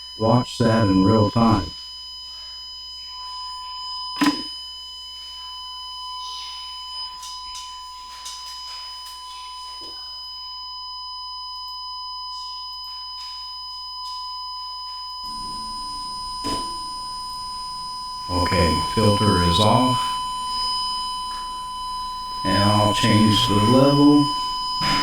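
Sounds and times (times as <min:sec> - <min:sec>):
steady test tone: 0:00.0 - 0:01.8, 0:03.0 - 0:25.0
low buzz: 0:15.1 - 0:25.0.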